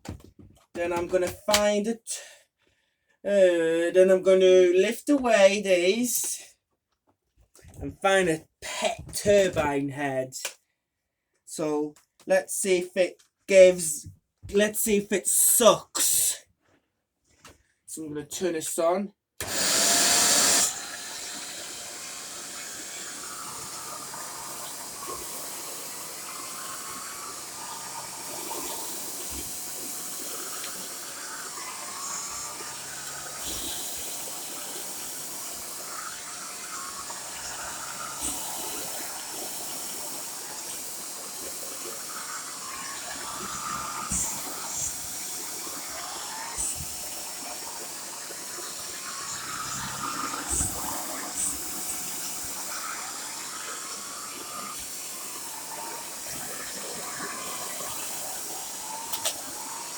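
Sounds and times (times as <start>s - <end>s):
vacuum cleaner running: 19.4s - 59.9s.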